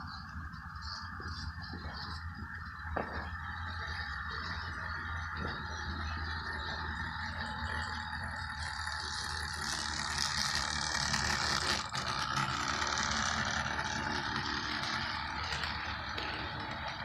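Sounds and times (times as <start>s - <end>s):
low hum: 0.0s - 17.0s
model train rattling on track: 0.0s - 17.0s.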